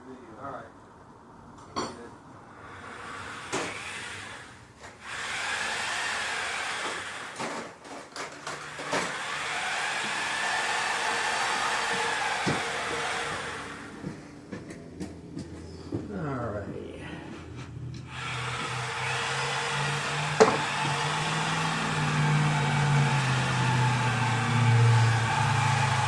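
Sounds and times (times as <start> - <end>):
power tool whirring: 2.6 - 14.2, 17.9 - 26.0.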